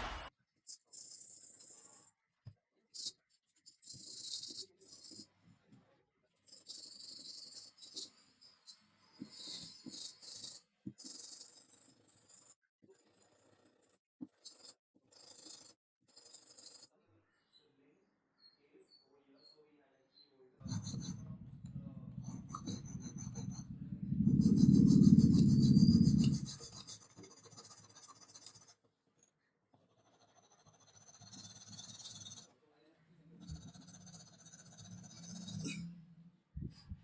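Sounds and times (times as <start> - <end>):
saw scraping rubbing strokes: 20.6 - 27.4.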